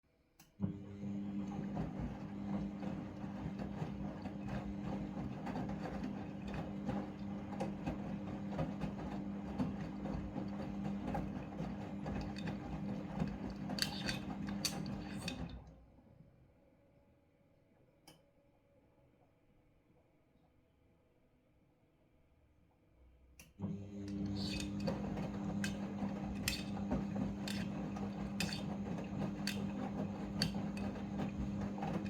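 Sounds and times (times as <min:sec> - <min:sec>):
washing machine motor hum: 0:00.6 - 0:15.8, 0:23.6 - 0:32.0.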